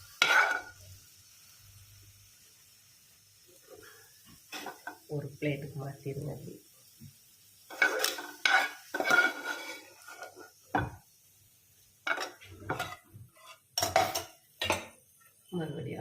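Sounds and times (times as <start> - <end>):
metal utensil scraping a pan: 0.0 - 0.8, 4.5 - 5.0, 7.7 - 10.9, 12.0 - 15.0.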